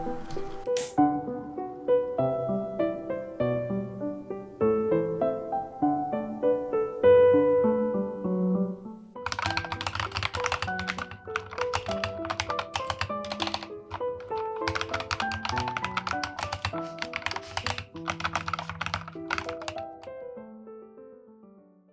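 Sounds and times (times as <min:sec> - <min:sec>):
soft piano music: 0:00.0 - 0:21.9
mechanical keyboard key clacks: 0:09.3 - 0:20.1.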